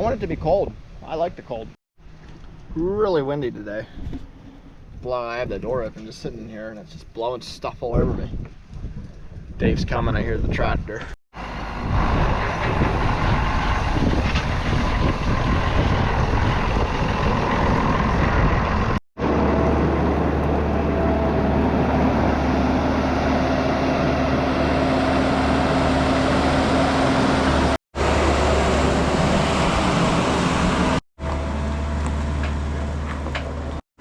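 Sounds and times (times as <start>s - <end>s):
gusty wind: 3.8s - 31.0s
farm machinery engine running: 11.4s - 33.8s.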